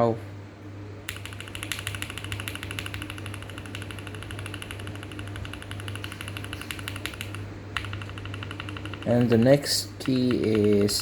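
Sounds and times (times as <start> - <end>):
steady low hum: 0.0 - 11.0
mechanical keyboard typing: 1.1 - 11.0.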